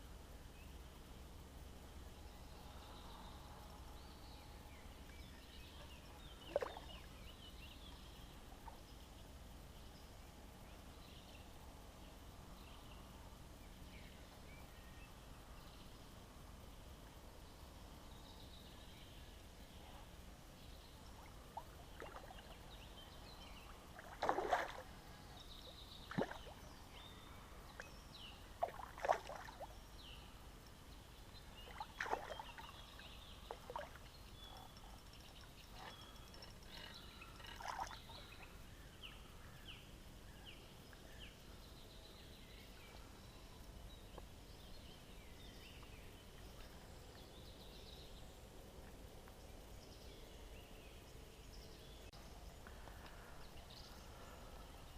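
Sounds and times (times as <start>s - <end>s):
faint birds chirping: 0.0s - 54.9s
creek ambience: 1.0s - 13.5s, 14.2s - 41.7s
brief sharp wading sounds: 24.0s - 24.9s.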